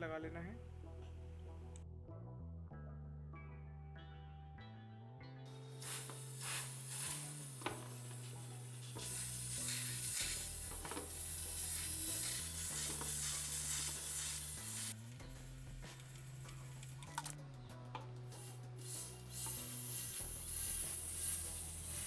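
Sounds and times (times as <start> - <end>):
low background music: 0.0 - 22.0
fuel injectors hissing: 5.8 - 17.5, 18.2 - 22.0.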